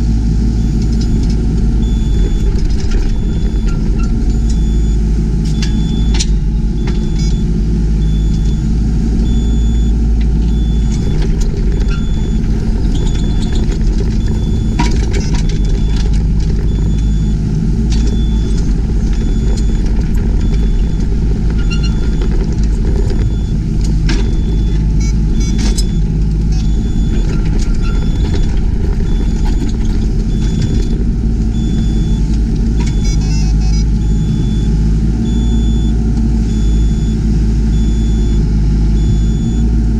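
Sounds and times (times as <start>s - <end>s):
excavator diesel engine running: 0.0s - 39.9s
knocks and clicks: 10.2s - 34.6s
faint high-pitched beep: 32.8s - 34.6s.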